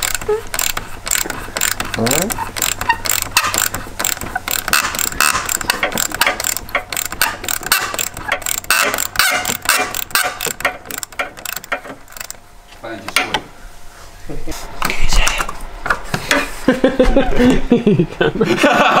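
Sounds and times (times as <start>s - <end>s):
hand ratchet clicking: 0.0s - 12.4s.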